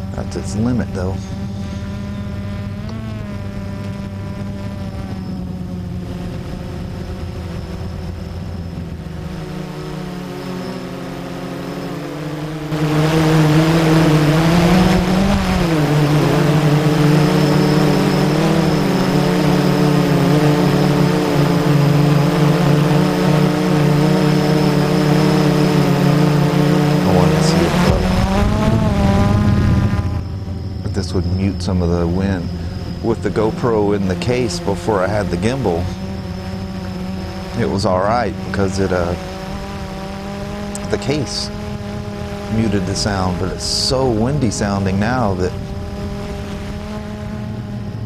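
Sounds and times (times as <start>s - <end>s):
quadcopter propellers whining: 0.0s - 48.0s.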